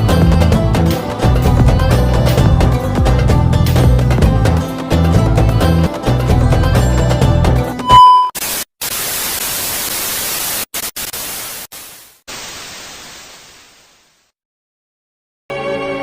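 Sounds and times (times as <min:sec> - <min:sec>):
music: 0:00.0 - 0:07.8, 0:15.5 - 0:16.0
high beep: 0:07.8 - 0:08.4
hissing static: 0:08.3 - 0:14.3.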